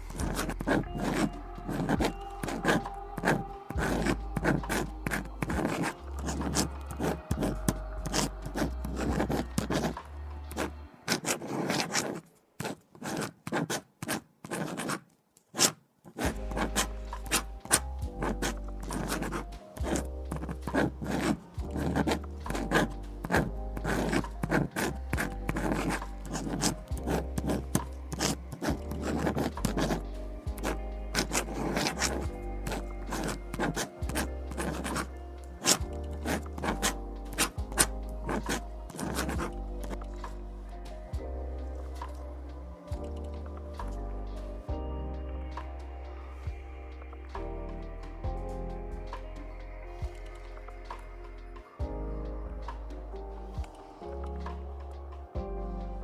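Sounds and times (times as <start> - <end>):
lo-fi background music: 0.0 - 13.8, 16.2 - 56.0
pen scratching on paper: 0.0 - 40.5.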